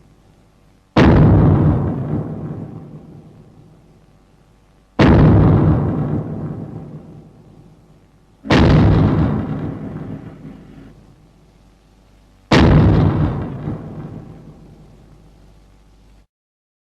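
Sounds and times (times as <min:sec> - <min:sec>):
deep boom: 0:01.0 - 0:03.0, 0:05.0 - 0:07.2, 0:08.4 - 0:11.0, 0:12.5 - 0:14.8.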